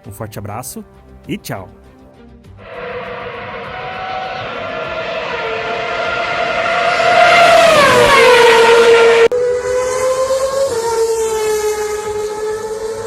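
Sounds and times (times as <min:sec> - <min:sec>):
race car engine passing by: 0:02.6 - 0:13.0.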